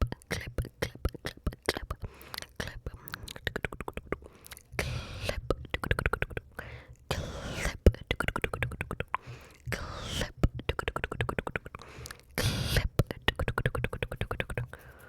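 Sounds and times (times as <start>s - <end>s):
wet tongue and lip clicks: 0.0s - 15.0s
breathy whispered puffs: 0.1s - 15.0s.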